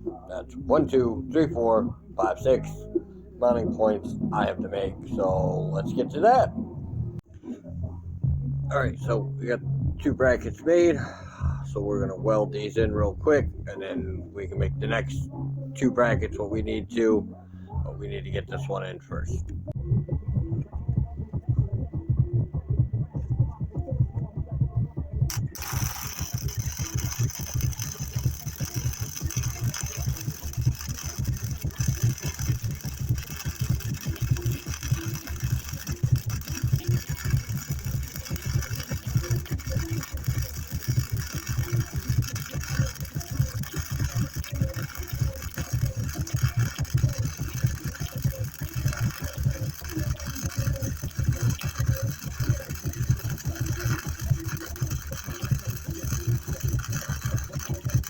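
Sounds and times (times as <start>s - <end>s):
welding arc crackling: 25.3s - 58.0s.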